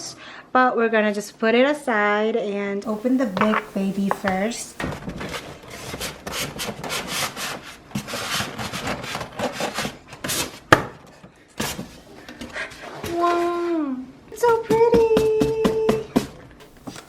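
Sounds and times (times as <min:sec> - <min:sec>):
cardboard scraping on cardboard: 0:02.9 - 0:04.8, 0:16.6 - 0:17.0.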